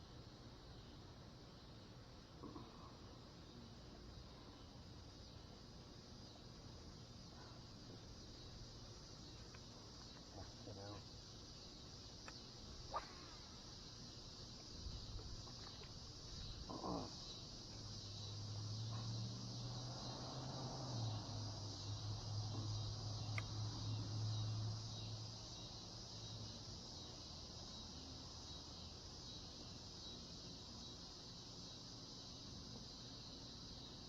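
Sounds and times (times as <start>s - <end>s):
crickets chirping: 0.0s - 34.0s
insects droning: 0.0s - 34.0s.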